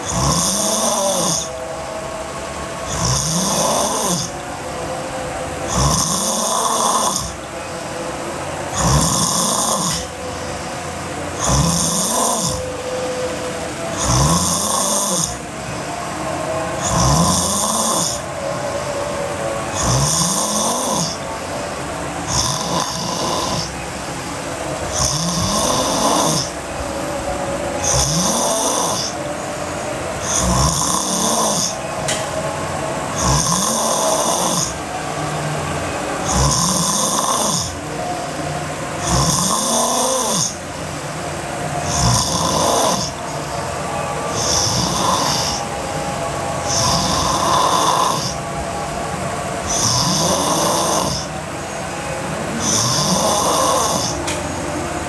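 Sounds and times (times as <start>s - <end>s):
girl snoring: 0.0s - 1.6s, 2.8s - 4.4s, 5.7s - 7.4s, 8.7s - 10.2s, 11.4s - 12.9s, 13.9s - 15.4s, 16.8s - 18.3s, 19.7s - 21.3s, 22.2s - 23.8s, 24.8s - 26.6s, 27.8s - 29.2s, 30.2s - 32.2s, 33.1s - 34.8s, 36.2s - 37.8s, 39.0s - 40.6s, 41.8s - 43.2s, 44.3s - 45.7s, 46.6s - 48.4s, 49.6s - 51.4s, 52.6s - 54.4s.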